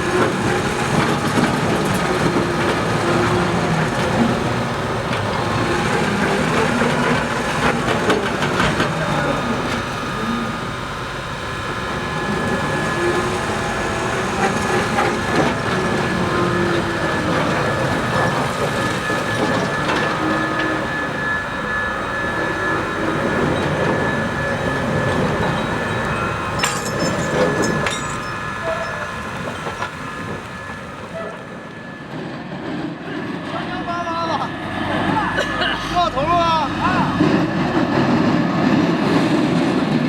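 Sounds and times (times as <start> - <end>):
wheels and couplings clanking: 0.0 - 10.8, 12.4 - 33.5
high wheel squealing: 0.0 - 40.0
train rumbling on track: 0.0 - 40.0.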